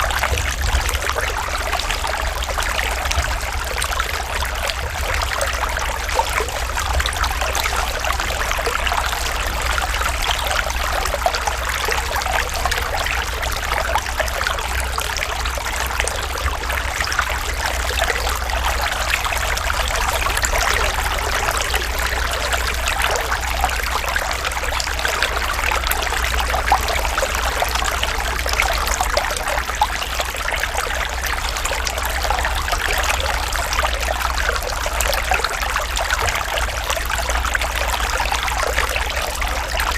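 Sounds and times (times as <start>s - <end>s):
low rumble: 0.0s - 39.7s
stream trickling and babbling: 0.0s - 39.9s.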